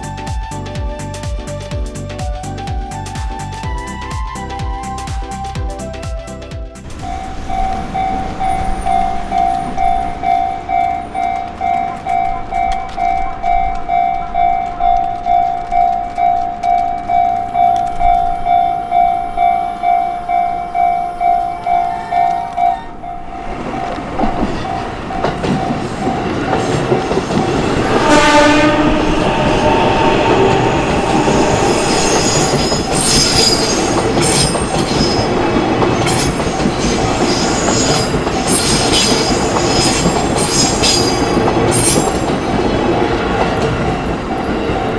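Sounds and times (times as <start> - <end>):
train rumbling: 6.8 - 44.9
train wheel squeal: 6.9 - 42.9
level crossing warning bell: 7.0 - 42.7
train horn blast: 27.4 - 35.3.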